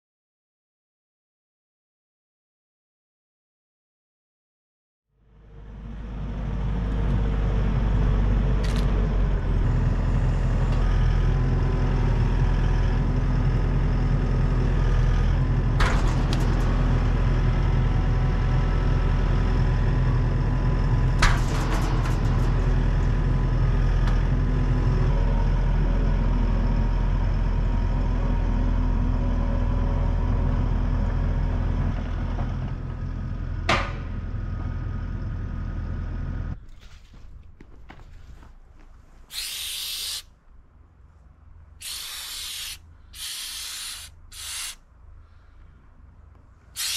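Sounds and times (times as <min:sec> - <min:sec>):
large machine engine running: 0:05.2 - 0:36.6.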